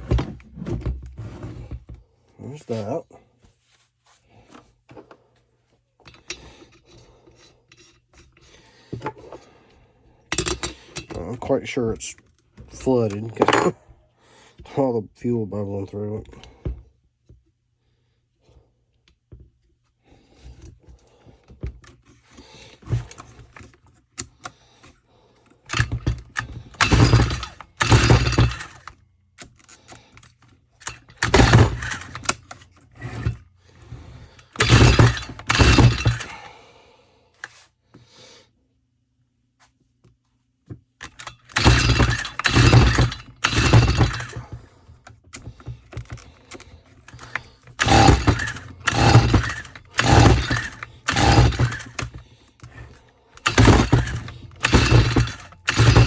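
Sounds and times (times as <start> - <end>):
recoil starter pulled rasping: 25.7 - 33.4, 34.0 - 36.4, 41.0 - 56.0.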